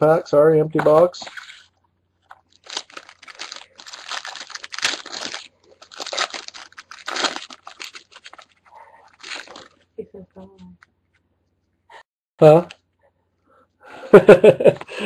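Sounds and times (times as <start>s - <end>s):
wrapper crinkling and tearing: 2.3s - 9.9s.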